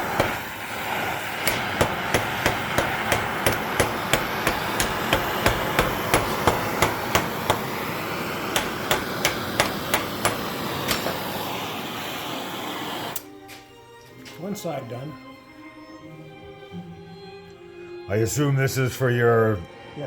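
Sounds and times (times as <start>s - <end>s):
hammer striking metal rivet: 0.0s - 11.4s.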